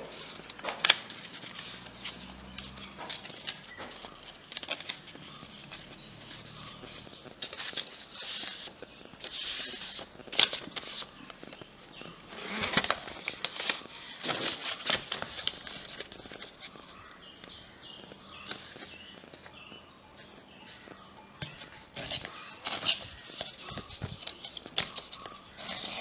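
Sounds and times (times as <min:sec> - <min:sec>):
paper rustling and crackling: 0:00.0 - 0:17.1, 0:20.7 - 0:26.0.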